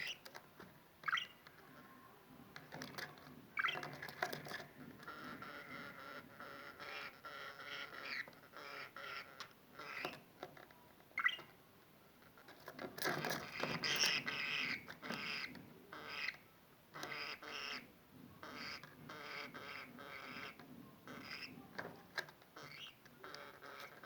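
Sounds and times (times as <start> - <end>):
budgerigar chattering and warbling: 1.0 - 1.4, 3.6 - 4.1, 5.0 - 10.2, 11.2 - 11.5, 13.4 - 21.8, 22.6 - 24.0.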